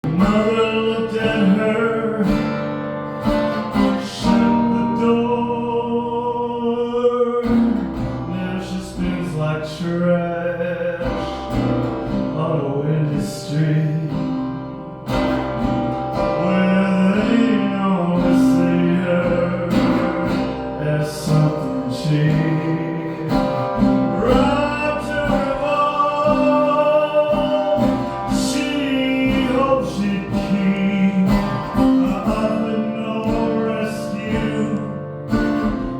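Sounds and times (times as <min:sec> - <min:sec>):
acoustic guitar: 0:00.0 - 0:35.9
man singing: 0:00.0 - 0:35.9.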